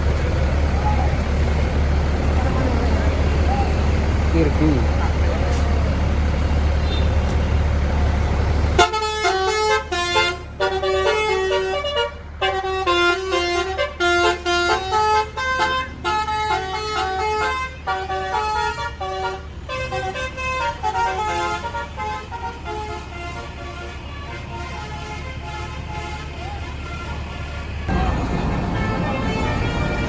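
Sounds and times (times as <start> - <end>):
bus horn playing a tune: 8.8 - 30.0.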